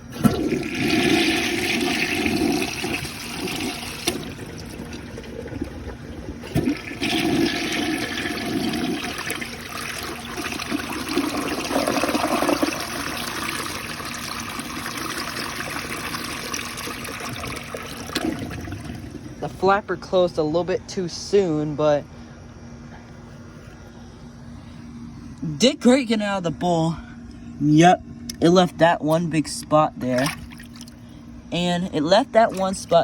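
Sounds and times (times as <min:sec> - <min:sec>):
toilet flushing: 0:00.0 - 0:19.5, 0:32.2 - 0:33.0
water running: 0:00.0 - 0:19.5, 0:30.0 - 0:31.0, 0:32.0 - 0:33.0.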